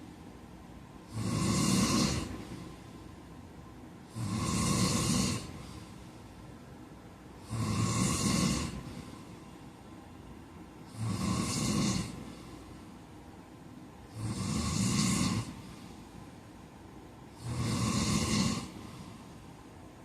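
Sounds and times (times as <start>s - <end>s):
man snoring: 1.1s - 2.9s, 4.0s - 6.0s, 7.4s - 9.5s, 10.9s - 12.8s, 14.1s - 16.0s, 17.3s - 19.4s.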